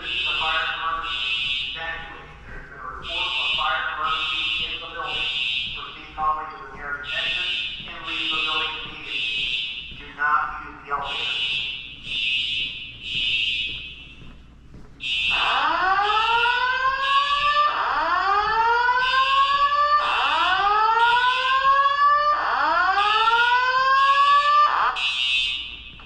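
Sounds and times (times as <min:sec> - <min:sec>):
alarm voice messages: 0:00.0 - 0:14.2, 0:15.0 - 0:25.6
fire alarm rising whoop: 0:15.0 - 0:25.9.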